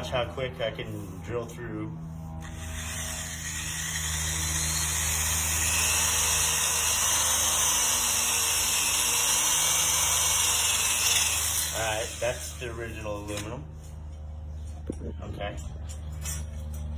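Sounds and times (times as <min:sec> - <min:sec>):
electric drill boring through metal: 0:02.4 - 0:12.6.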